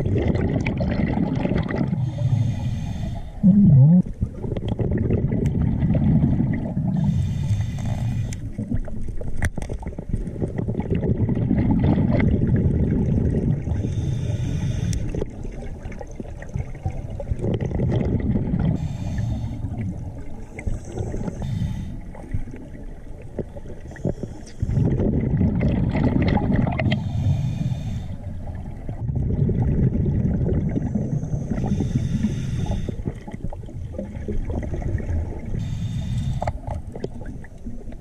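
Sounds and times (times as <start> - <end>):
exhaled air bubbling: 0.0 - 38.0
regulator hiss on inhale: 2.0 - 3.5, 7.0 - 8.6, 13.8 - 15.2, 18.8 - 22.2, 23.9 - 25.0, 26.8 - 28.6, 31.1 - 33.2, 35.5 - 36.8.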